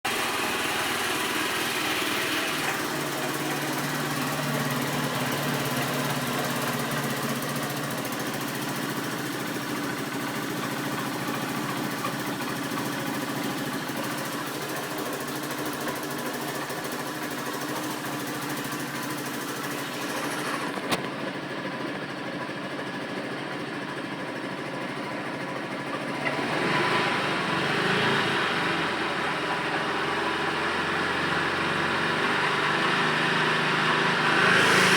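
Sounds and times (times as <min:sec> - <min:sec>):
motorcycle engine running: 0:00.0 - 0:34.9.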